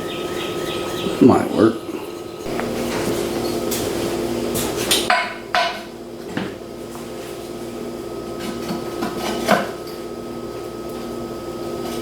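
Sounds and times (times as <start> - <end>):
steady machine hum: 0.0 - 8.4.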